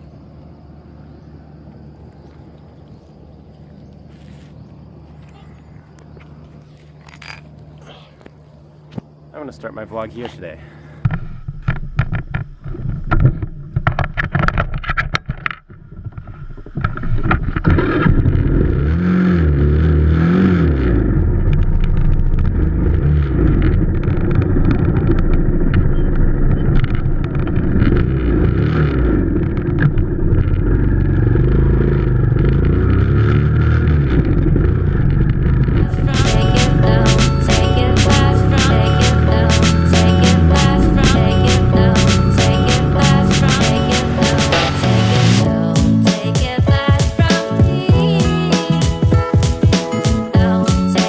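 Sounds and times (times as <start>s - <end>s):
wind noise on microphone: 11.1s - 18.8s
motorcycle engine running: 20.7s - 51.0s.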